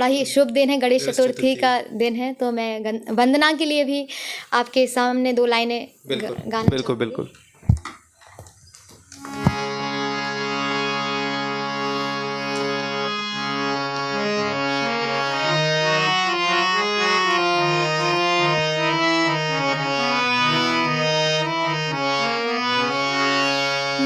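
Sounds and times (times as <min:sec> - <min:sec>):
harmonium melody over drone: 0:00.9 - 0:01.7, 0:09.2 - 0:24.0.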